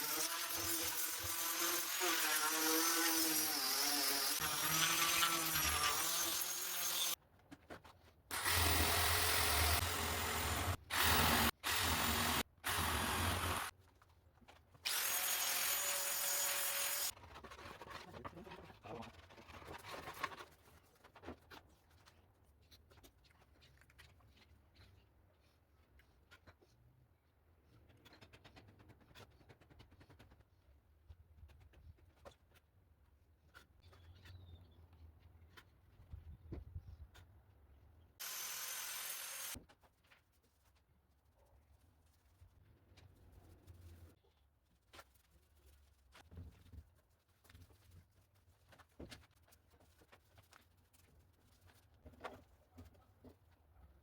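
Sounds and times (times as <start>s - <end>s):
power tool motor whining: 8.3s - 13.7s, 38.2s - 39.6s.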